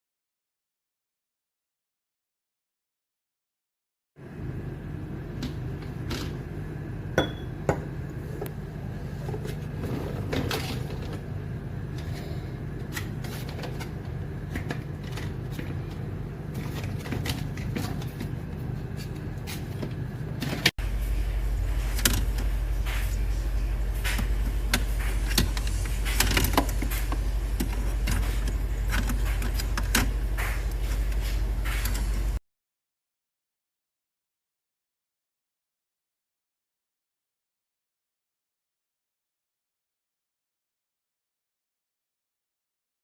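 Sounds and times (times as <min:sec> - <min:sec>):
deeper hum: 0:04.2 - 0:32.4
low mechanical hum: 0:04.2 - 0:32.4.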